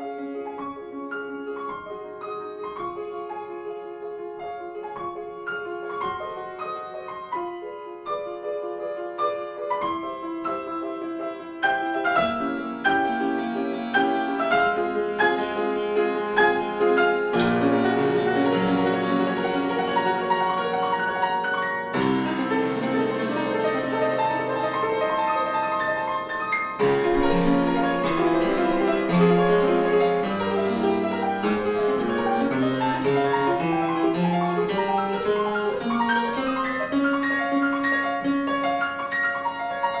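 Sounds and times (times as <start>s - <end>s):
classical solo piano: 0.0s - 40.0s.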